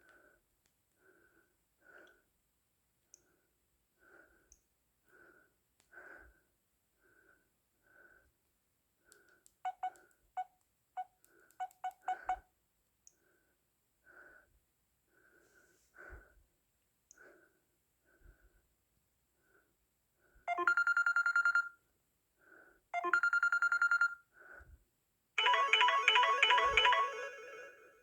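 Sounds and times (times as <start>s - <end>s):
soft pulsing ringtone: 20.5s - 21.8s, 23.0s - 24.2s, 25.4s - 28.0s.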